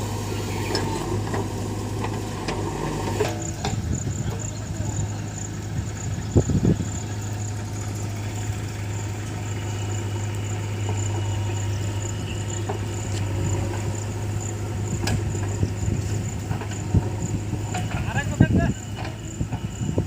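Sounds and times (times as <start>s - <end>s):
diesel engine humming: 0.0s - 20.0s.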